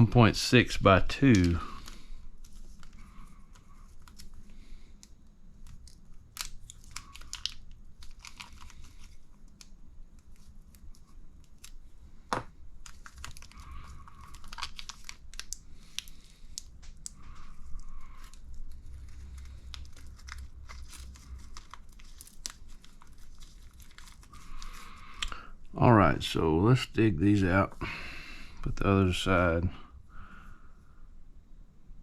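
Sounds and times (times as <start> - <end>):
plastic packaging crinkling: 0.7 - 25.4.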